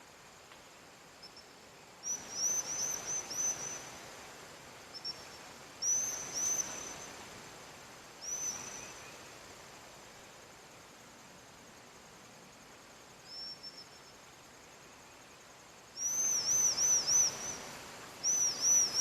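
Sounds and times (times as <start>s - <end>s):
faint outdoor hiss: 0.0s - 19.0s
small bird chirping: 18.2s - 19.0s.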